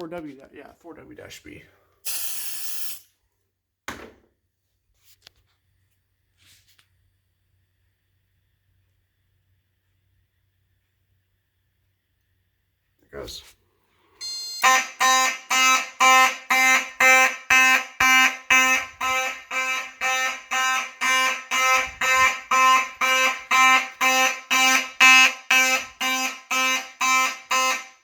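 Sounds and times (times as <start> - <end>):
pulsed fire alarm horn: 14.2 - 28.0.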